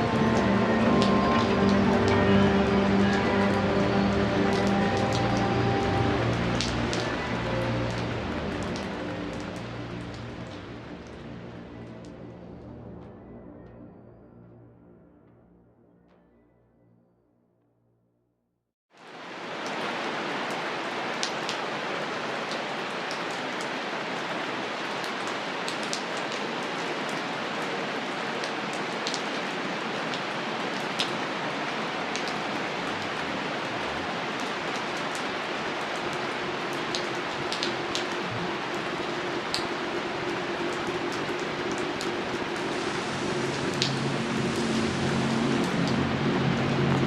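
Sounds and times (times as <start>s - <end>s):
steady rain hiss: 0.0s - 12.4s, 19.0s - 47.0s
raindrop ticks: 0.2s - 12.2s, 22.4s - 27.2s, 28.4s - 31.2s, 32.1s - 47.0s.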